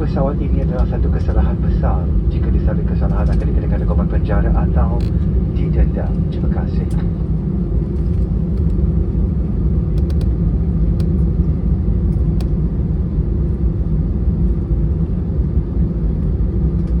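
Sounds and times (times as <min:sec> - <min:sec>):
aircraft engines idling rumble: 0:00.0 - 0:17.0
faint hum: 0:00.0 - 0:17.0
light ticks: 0:10.0 - 0:10.3.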